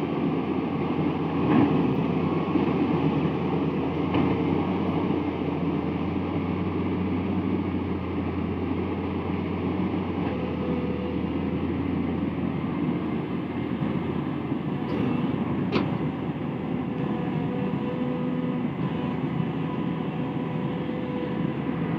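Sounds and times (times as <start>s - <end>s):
truck engine humming: 0.0s - 21.9s.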